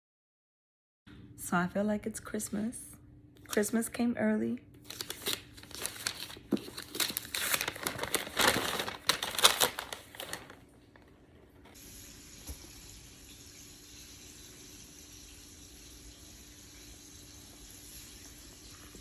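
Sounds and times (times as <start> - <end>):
wrapping paper crinkling and tearing: 4.8 - 10.8.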